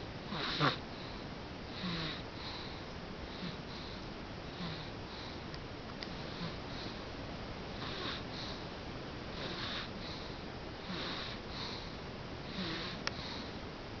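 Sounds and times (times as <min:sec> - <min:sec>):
small sleeper snoring: 0:00.0 - 0:05.4, 0:06.1 - 0:07.1, 0:07.7 - 0:08.7, 0:09.3 - 0:13.6.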